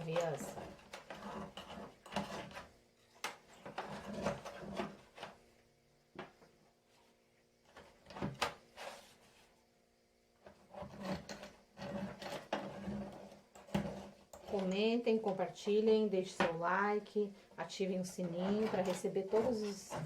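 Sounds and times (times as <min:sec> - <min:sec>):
clatter and scraping of tins: 0:00.0 - 0:05.4, 0:10.4 - 0:15.6, 0:18.0 - 0:20.0.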